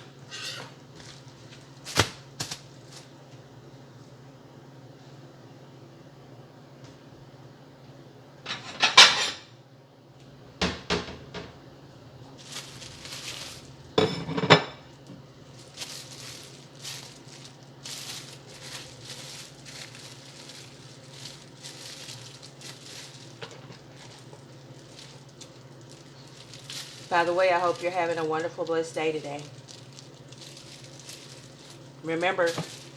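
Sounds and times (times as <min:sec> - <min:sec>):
utensils and dishes clattering: 0:00.0 - 0:00.8, 0:08.5 - 0:09.4, 0:12.4 - 0:14.9, 0:31.0 - 0:32.9
faint low hum: 0:09.7 - 0:32.9.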